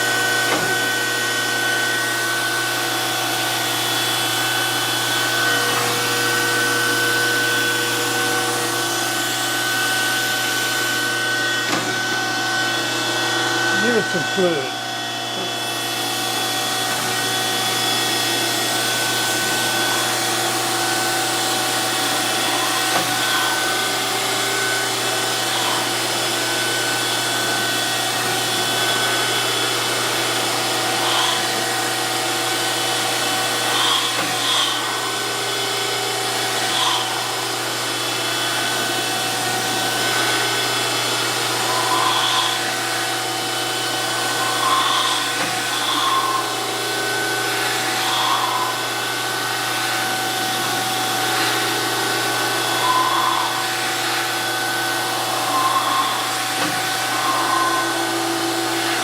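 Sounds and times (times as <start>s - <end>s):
surface grinder grinding: 0.0s - 59.0s.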